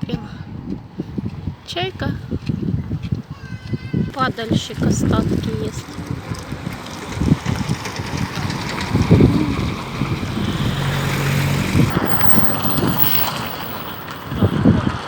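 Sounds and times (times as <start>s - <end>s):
wind buffeting microphone: 0.0s - 15.0s
vehicle engine hum passing: 4.7s - 15.0s.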